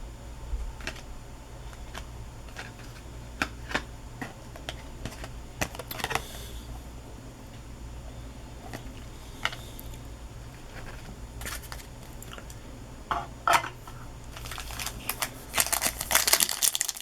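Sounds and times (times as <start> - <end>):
steady low hum: 0.0 - 17.0
cards rustling slide: 14.4 - 16.5
trading cards clicking and snapping: 14.4 - 17.0.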